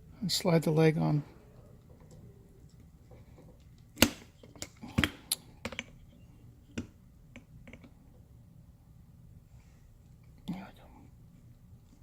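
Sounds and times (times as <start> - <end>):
sharp clicks and knocks: 6.7 - 8.0.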